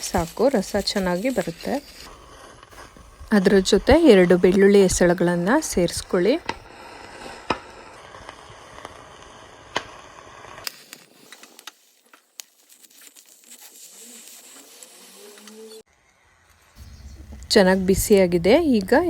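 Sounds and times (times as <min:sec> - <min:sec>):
leaves and garlic crackling in pan: 0:00.0 - 0:09.4, 0:10.6 - 0:15.9.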